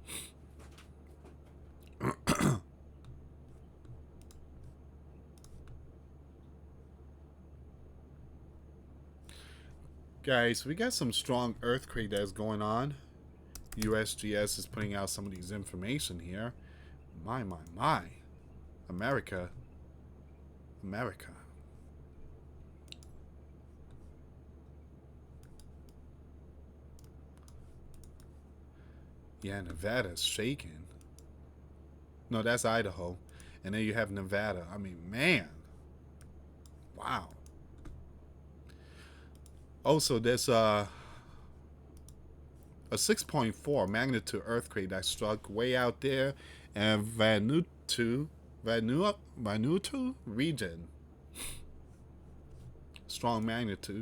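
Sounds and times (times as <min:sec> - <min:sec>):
low steady hum: 0:00.0 - 0:54.0
faint clicks: 0:03.0 - 0:06.5, 0:13.5 - 0:14.0, 0:22.8 - 0:26.0, 0:27.0 - 0:28.4, 0:35.6 - 0:39.6, 0:41.9 - 0:42.8.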